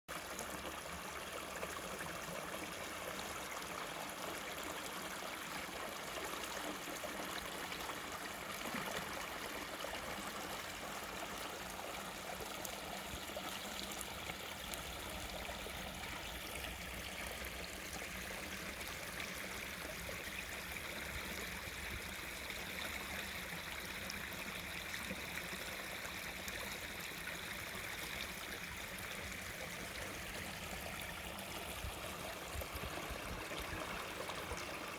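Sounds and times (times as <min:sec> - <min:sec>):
stream babbling over stones: 0:00.1 - 0:34.9.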